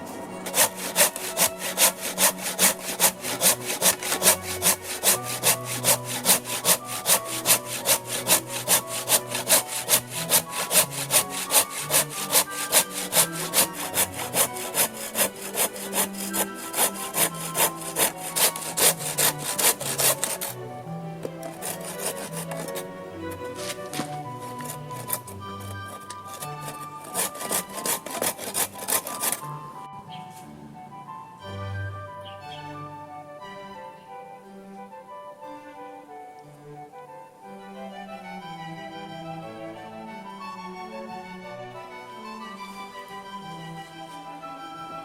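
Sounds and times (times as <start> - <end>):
hand saw cutting wood: 0.0 - 29.6.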